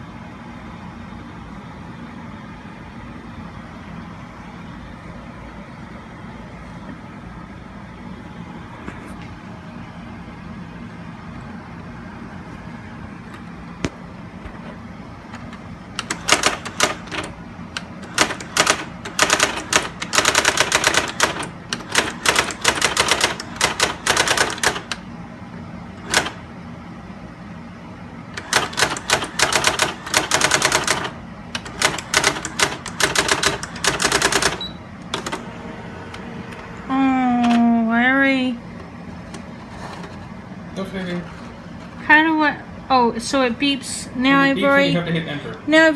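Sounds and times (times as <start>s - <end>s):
steady low hum: 0.0s - 45.9s
typewriter clattering: 16.0s - 17.3s, 18.0s - 25.0s, 26.0s - 26.4s, 28.4s - 35.4s.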